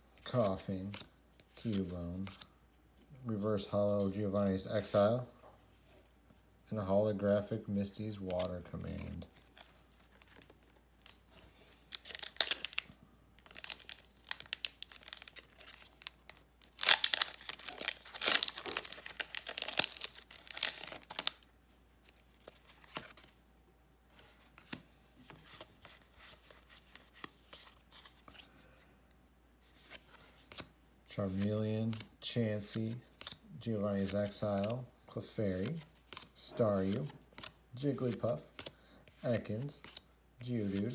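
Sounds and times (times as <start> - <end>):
rustling of wrapper and cards: 8.2 - 23.4, 24.1 - 28.8, 29.6 - 40.9
foil wrapper tearing and crinkling: 11.9 - 21.4.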